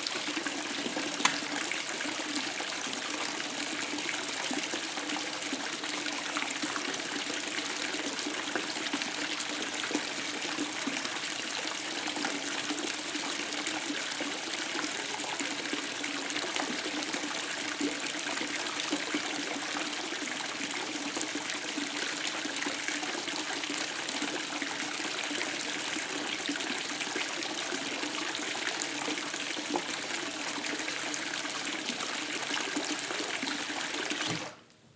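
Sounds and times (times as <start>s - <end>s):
tap water splashing into tub: 0.7s - 2.4s, 32.8s - 34.7s.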